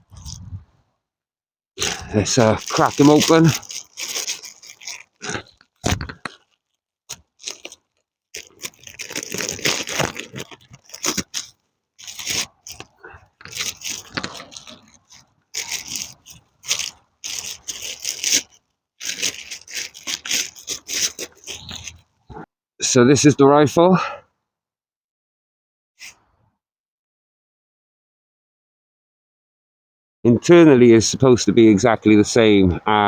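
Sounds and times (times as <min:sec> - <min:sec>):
cardboard and wrapping rustling: 0:01.8 - 0:22.1.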